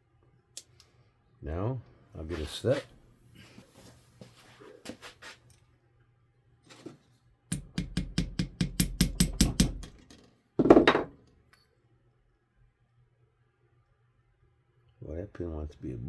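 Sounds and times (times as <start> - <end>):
hammer tapping metal punch: 7.5 - 10.0.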